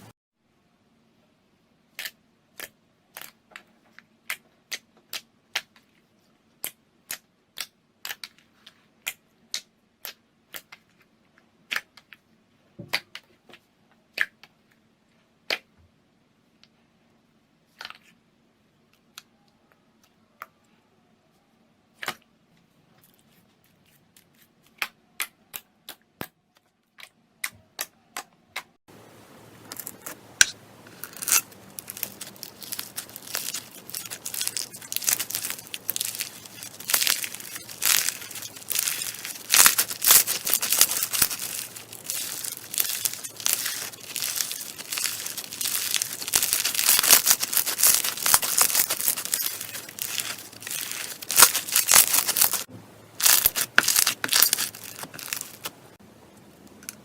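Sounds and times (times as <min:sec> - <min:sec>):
slime crackling: 0:29.6 - 0:55.9.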